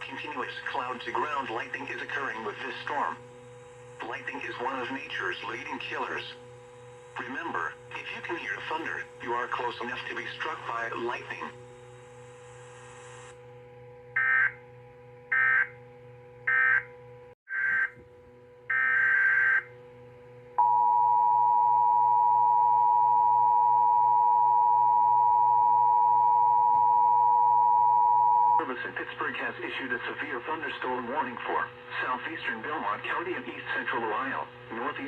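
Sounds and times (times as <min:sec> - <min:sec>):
faint steady hum: 0:00.0 - 0:35.0
two-tone attention signal: 0:20.6 - 0:28.6.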